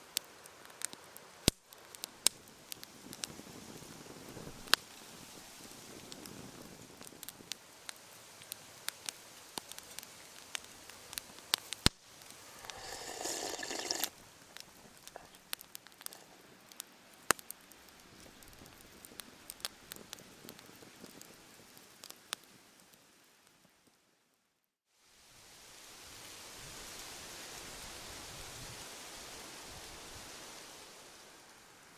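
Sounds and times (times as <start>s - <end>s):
hiss from fire: 0.0s - 23.2s, 24.9s - 31.9s
campfire crackling: 0.0s - 24.0s.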